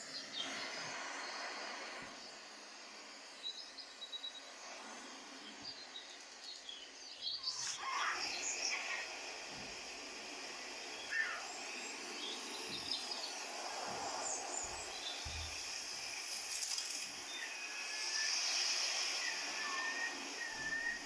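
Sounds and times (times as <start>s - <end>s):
outdoor background hiss: 0.0s - 21.0s
birds chirping: 5.4s - 16.4s, 17.1s - 21.0s.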